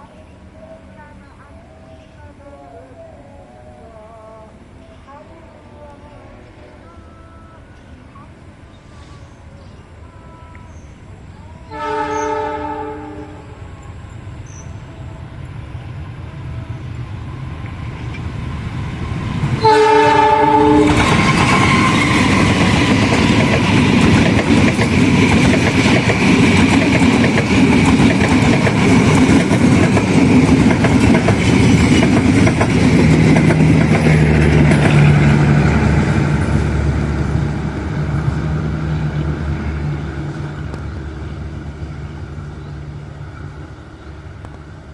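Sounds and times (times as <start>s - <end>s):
diesel locomotive horn: 11.6s - 14.0s, 19.6s - 24.0s
train wheels clattering over rails: 19.1s - 39.2s.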